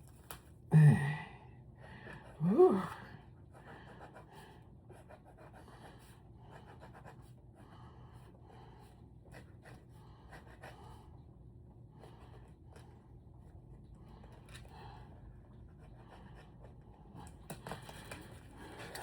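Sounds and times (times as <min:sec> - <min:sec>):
pencil scratching on paper: 0:03.4 - 0:11.2, 0:12.0 - 0:17.1.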